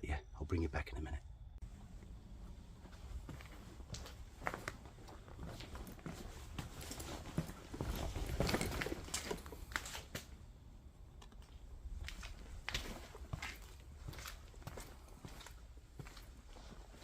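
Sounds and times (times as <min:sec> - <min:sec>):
footsteps: 0:01.6 - 0:10.4, 0:11.2 - 0:17.0
small knocks clicks and rustles: 0:04.0 - 0:10.4.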